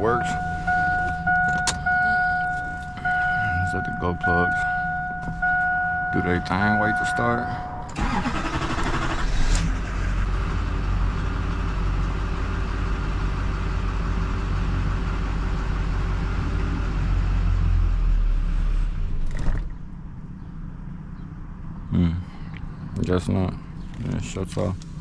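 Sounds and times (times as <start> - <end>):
diesel engine running: 0.0 - 19.1.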